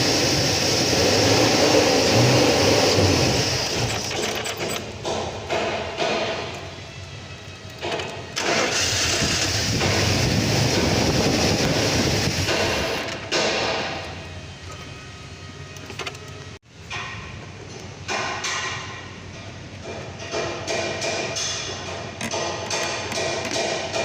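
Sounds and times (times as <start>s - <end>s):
car engine cranking on starter: 8.4s - 13.1s.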